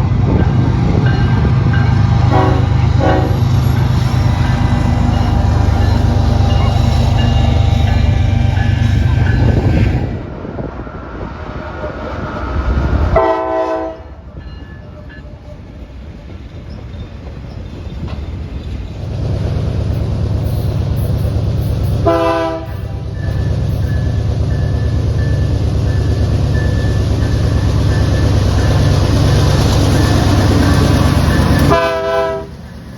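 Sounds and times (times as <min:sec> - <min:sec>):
passing train rumble and clatter: 0:00.0 - 0:32.9
locomotive air horn blasts: 0:02.2 - 0:03.6, 0:13.2 - 0:14.2, 0:22.0 - 0:23.0, 0:31.4 - 0:32.5.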